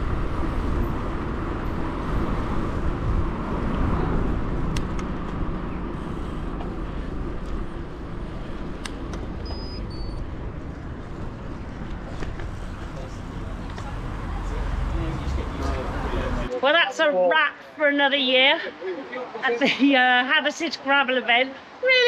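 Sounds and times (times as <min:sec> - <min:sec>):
bicycle tyres rolling on road: 0:00.0 - 0:16.5
rushing wind: 0:00.0 - 0:16.5.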